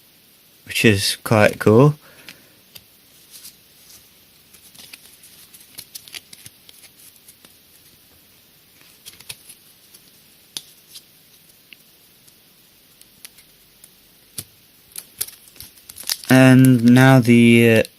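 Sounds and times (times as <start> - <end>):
cards clicking and rustling: 2.2 - 7.6, 8.8 - 11.1, 13.0 - 17.9.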